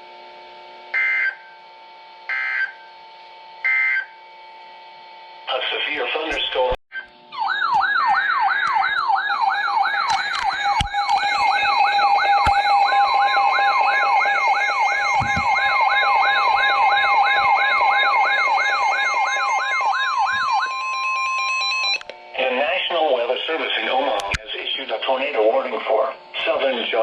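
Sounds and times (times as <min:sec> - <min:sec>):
electronic siren yelping: 0:00.9 - 0:01.5, 0:02.3 - 0:02.8, 0:03.6 - 0:04.2, 0:06.9 - 0:22.0
steady alarm tones: 0:00.9 - 0:27.0.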